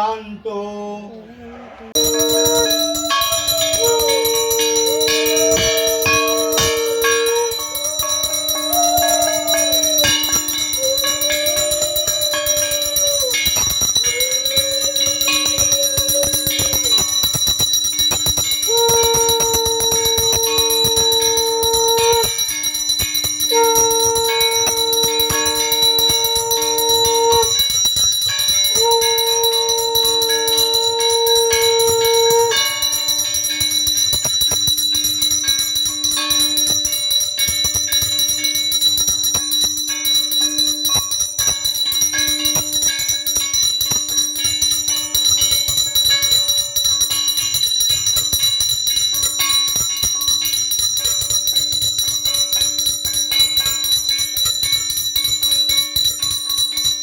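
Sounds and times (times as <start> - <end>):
low held tone: 1.9 - 45.6
conch shell blasts: 2.0 - 27.9, 28.6 - 34.8
hand bell ringing: 2.0 - 57.0.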